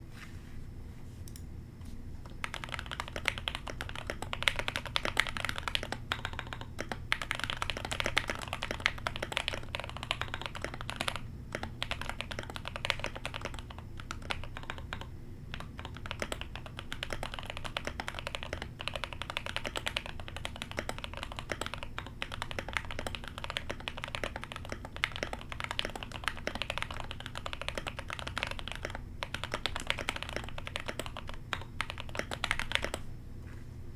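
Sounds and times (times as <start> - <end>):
fast typing on mechanical keyboard: 2.4 - 33.0.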